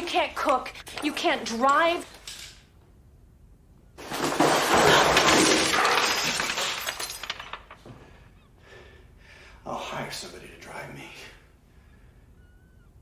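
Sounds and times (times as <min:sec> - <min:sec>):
glass shattering: 0:04.1 - 0:07.8
glass pieces clinking: 0:04.2 - 0:07.8.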